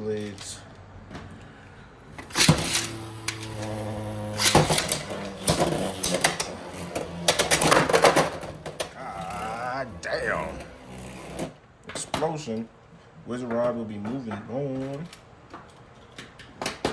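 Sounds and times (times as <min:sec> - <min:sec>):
spinning tops clashing: 0:02.2 - 0:08.6
spinning tops whirring: 0:02.2 - 0:11.6.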